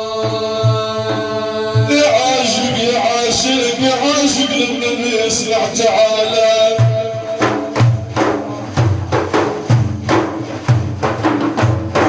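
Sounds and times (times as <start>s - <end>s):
hand drum rhythm: 0.0s - 4.6s, 5.3s - 12.0s
praise singing: 0.0s - 9.5s.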